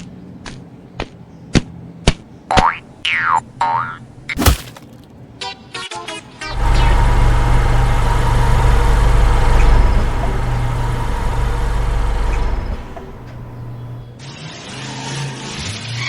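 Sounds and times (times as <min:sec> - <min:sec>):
vehicle engine rumbling: 0:06.5 - 0:14.2.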